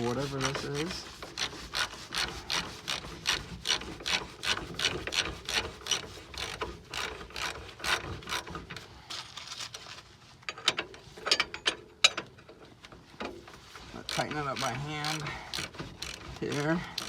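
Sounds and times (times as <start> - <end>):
ratchet wrench clicking: 14.0 - 17.0.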